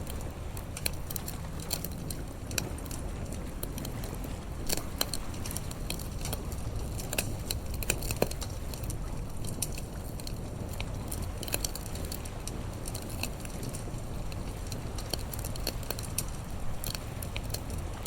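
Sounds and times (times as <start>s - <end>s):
campfire crackling and popping: 0.0s - 18.0s
low steady rumble: 0.0s - 18.0s.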